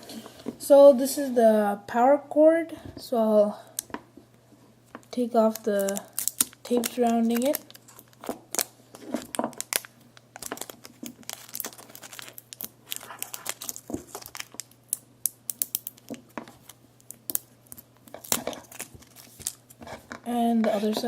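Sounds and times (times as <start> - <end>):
faint steady hum: 0.0 - 21.0
tape and plastic crinkling: 4.9 - 21.0.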